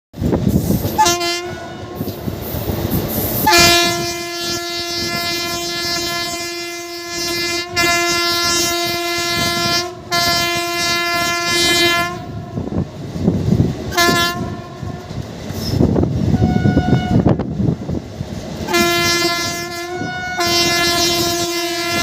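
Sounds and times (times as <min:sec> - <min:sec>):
train rumble and rail clatter: 0:00.1 - 0:22.0
electric locomotive horn: 0:01.0 - 0:02.1, 0:03.4 - 0:12.7, 0:13.9 - 0:15.2, 0:16.3 - 0:17.4, 0:18.7 - 0:22.0.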